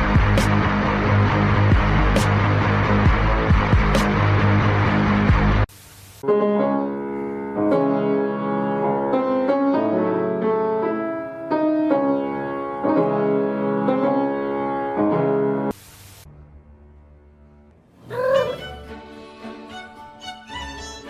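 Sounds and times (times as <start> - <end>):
slow piano music: 6.2 - 15.7.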